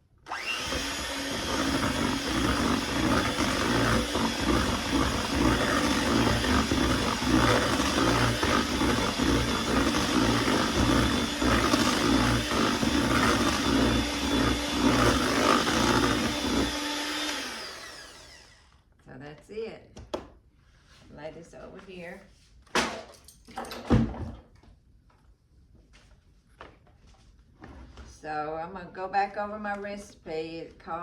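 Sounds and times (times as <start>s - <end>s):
electric mixer running: 0.3s - 18.8s.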